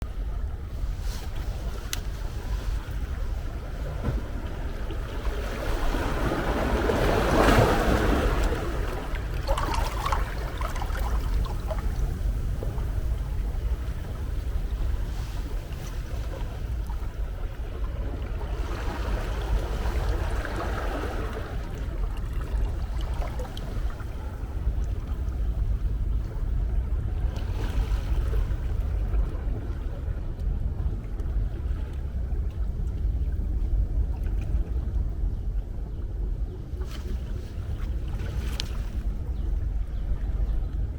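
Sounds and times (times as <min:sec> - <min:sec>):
ocean waves breaking: 0:00.0 - 0:32.8
steady low rumble: 0:00.0 - 0:40.9
wave wash fizzing: 0:01.0 - 0:17.3.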